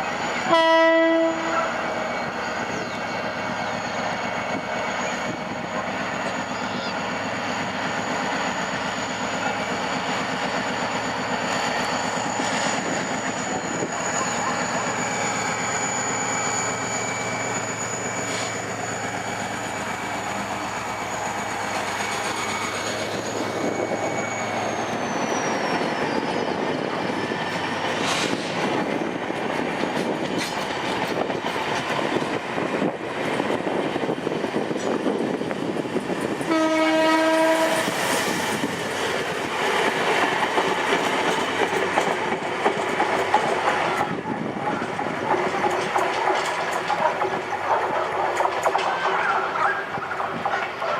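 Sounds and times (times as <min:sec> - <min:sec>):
diesel locomotive engine running: 0:00.0 - 0:50.9
train horn blast: 0:00.5 - 0:01.8, 0:36.5 - 0:37.9
wheels clicking over rail joints: 0:40.0 - 0:50.9.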